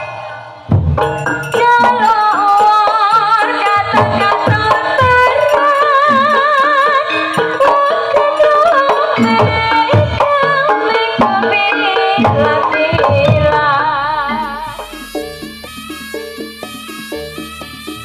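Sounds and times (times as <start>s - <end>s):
melody with wide vibrato: 0.0s - 9.4s, 13.5s - 18.0s
rapid hand-drum strokes: 0.0s - 18.0s.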